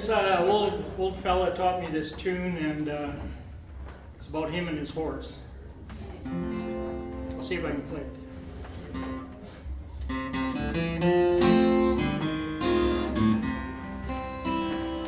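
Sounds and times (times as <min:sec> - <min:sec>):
acoustic guitar playing: 0:06.2 - 0:15.0.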